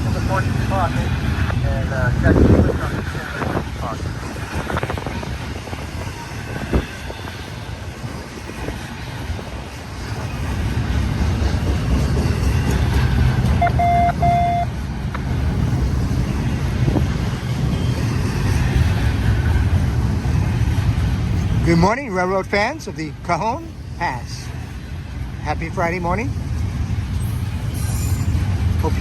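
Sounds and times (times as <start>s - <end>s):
freight train rumbling past: 0.0s - 29.0s
short single-pitched beep: 13.6s - 14.7s.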